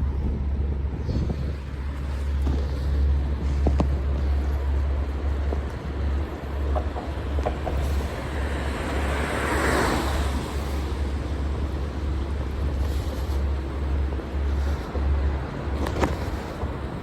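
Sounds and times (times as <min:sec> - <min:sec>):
road traffic: 0:00.0 - 0:17.0
wind rumbling on microphone: 0:00.0 - 0:17.0
vehicle passing close: 0:08.2 - 0:11.0.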